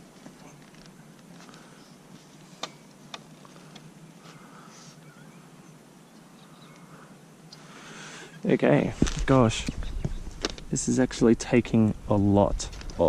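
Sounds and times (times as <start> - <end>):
soft ticks and scrapes: 0.1 - 4.4.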